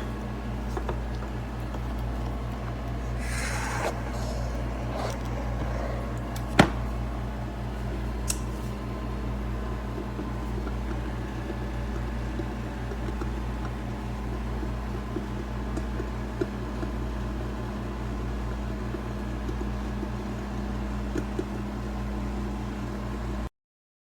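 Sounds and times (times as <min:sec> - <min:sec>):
coffee maker humming: 0:00.0 - 0:23.3
coffee maker hiss: 0:03.0 - 0:07.2.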